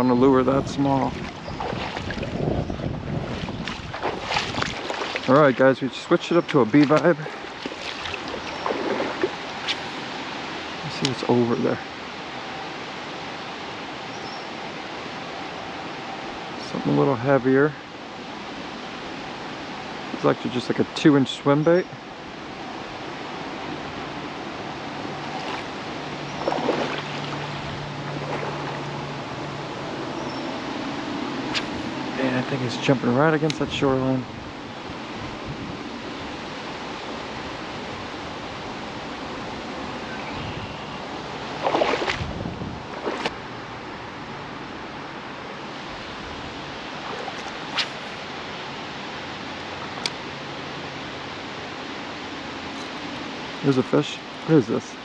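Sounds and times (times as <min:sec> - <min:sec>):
flowing creek water: 0:00.0 - 0:55.0
water splashes or knocks: 0:01.1 - 0:02.5, 0:03.2 - 0:05.6, 0:06.5 - 0:09.4, 0:25.3 - 0:25.7, 0:26.4 - 0:28.8, 0:41.6 - 0:42.3.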